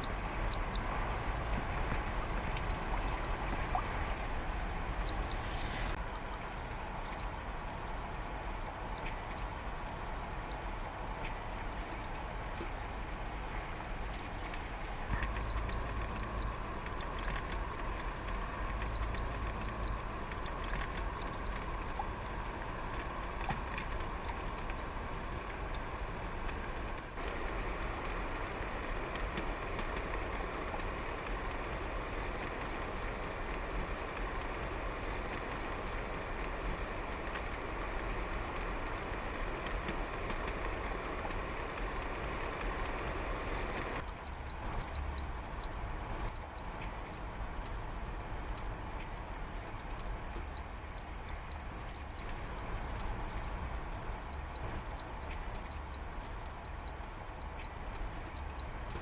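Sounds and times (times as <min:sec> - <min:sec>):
bird giving dry clicking call: 0:00.0 - 0:06.0, 0:15.0 - 0:46.7
rain hiss: 0:00.0 - 0:59.0.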